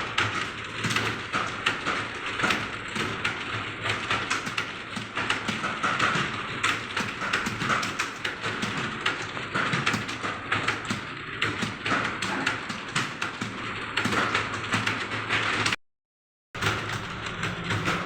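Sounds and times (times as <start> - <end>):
fast keyboard typing: 16.6 - 18.0.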